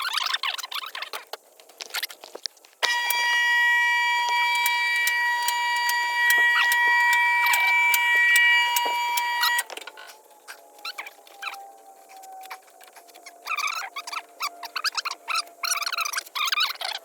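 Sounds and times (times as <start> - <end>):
high electronic buzzer tone: 2.8 - 9.7.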